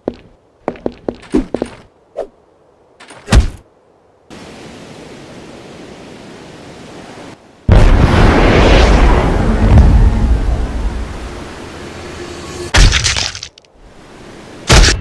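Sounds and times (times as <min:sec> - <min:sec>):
steady rushing noise: 0:04.3 - 0:12.7
loud crash of noise: 0:07.7 - 0:11.3.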